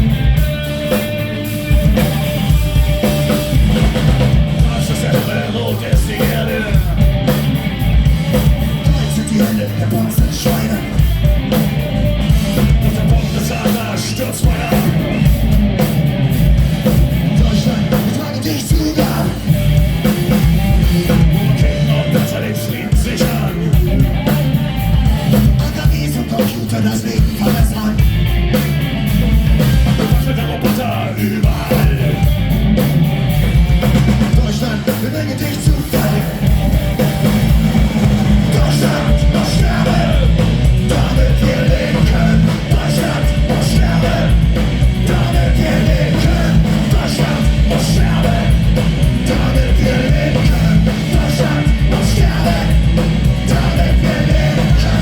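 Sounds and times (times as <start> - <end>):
punk rock band playing: 0.0 - 55.0
person singing: 4.5 - 7.4, 8.1 - 11.4, 12.5 - 15.4, 21.1 - 28.2, 29.9 - 32.3, 34.2 - 37.4, 38.0 - 55.0.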